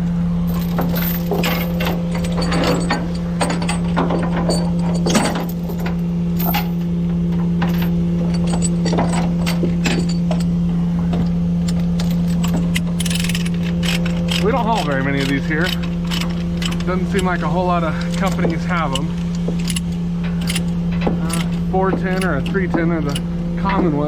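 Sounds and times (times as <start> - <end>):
engine idling: 0.0 - 24.0
metal chains clinking: 0.5 - 6.9, 7.6 - 10.6, 11.6 - 23.3.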